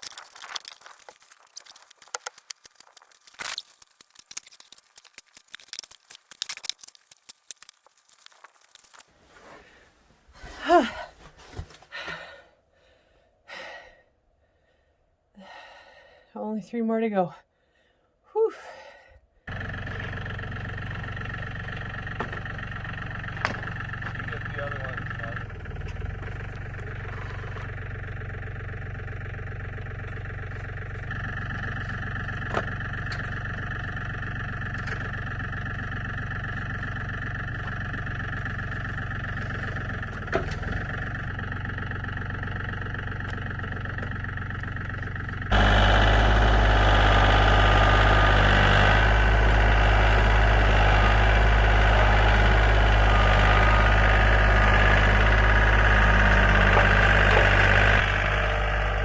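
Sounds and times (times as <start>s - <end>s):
engine running: 19.5s - 59.0s.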